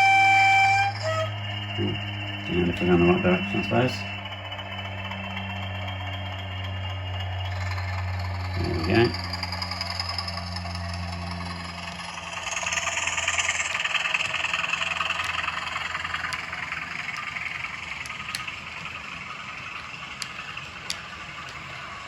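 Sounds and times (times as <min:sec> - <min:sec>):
model locomotive engine sound: 0:00.0 - 0:22.0
sharp clicks: 0:13.3 - 0:19.1, 0:19.7 - 0:21.9.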